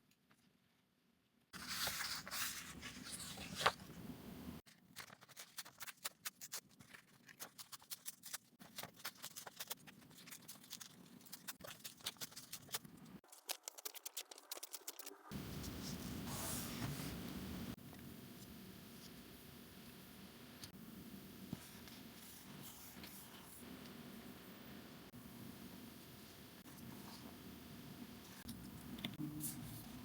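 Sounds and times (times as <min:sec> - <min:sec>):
paper rustling and scraping: 0:01.6 - 0:04.0, 0:04.7 - 0:17.4.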